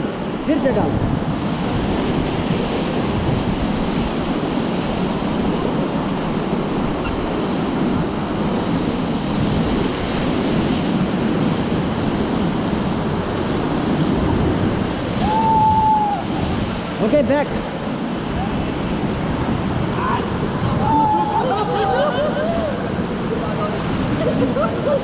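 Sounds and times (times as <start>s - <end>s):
river rapids rushing: 13.0s - 25.0s.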